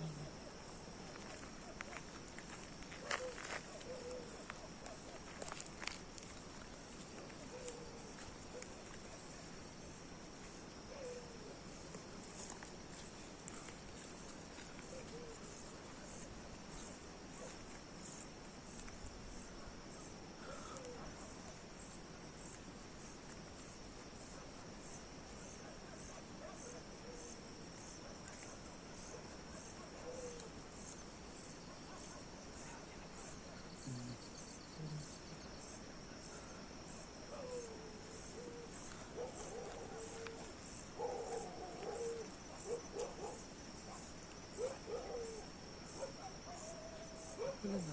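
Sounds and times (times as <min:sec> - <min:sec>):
crickets chirping: 0:00.0 - 0:47.9.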